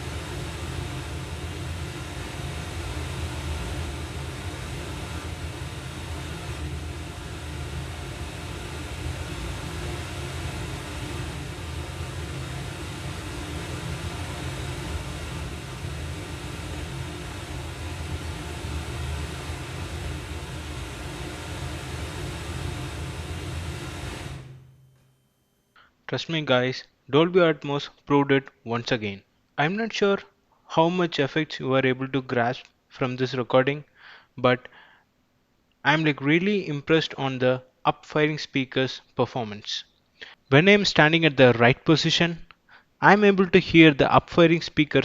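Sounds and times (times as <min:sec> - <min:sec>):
deep bass rumble from soundbar: 0:00.0 - 0:24.9.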